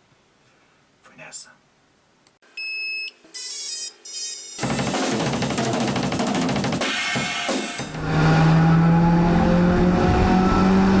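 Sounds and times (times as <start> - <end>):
drum kit playing busily: 4.6 - 8.0.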